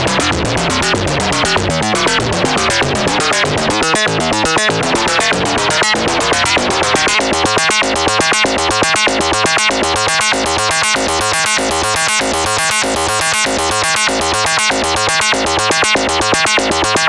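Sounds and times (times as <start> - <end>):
synthesizer sequenced pattern: 3.9 - 16.7.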